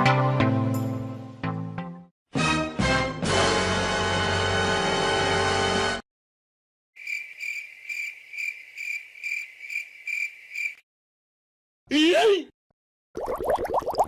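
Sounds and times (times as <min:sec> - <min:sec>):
music: 0:00.0 - 0:06.0
cricket chirping: 0:07.0 - 0:10.8.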